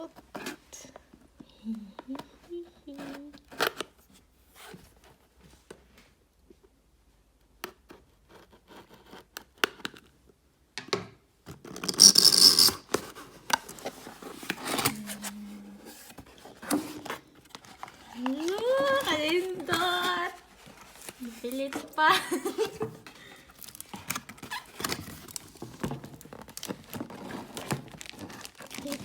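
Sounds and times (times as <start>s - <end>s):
box packaging clicks and scratches: 2.9s - 4.8s, 11.5s - 29.0s.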